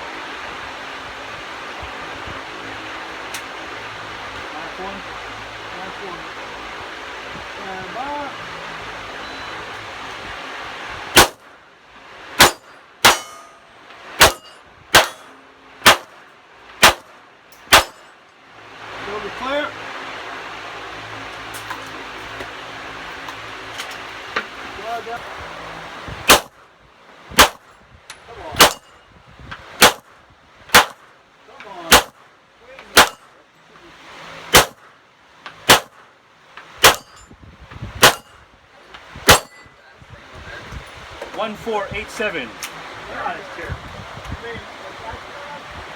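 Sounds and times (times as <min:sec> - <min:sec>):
pistol shots: 0:11.2 - 0:11.4, 0:12.4 - 0:13.4, 0:14.2 - 0:16.2, 0:16.8 - 0:18.1, 0:26.3 - 0:26.5, 0:27.4 - 0:27.6, 0:28.6 - 0:28.9, 0:29.8 - 0:30.1, 0:30.7 - 0:31.1, 0:31.9 - 0:32.2, 0:32.9 - 0:33.3, 0:34.5 - 0:34.9, 0:35.7 - 0:36.0, 0:36.8 - 0:37.2, 0:38.0 - 0:38.3, 0:39.3 - 0:39.6
metallic clang: 0:12.4 - 0:16.1, 0:16.9 - 0:18.3, 0:36.8 - 0:37.4, 0:39.3 - 0:39.8.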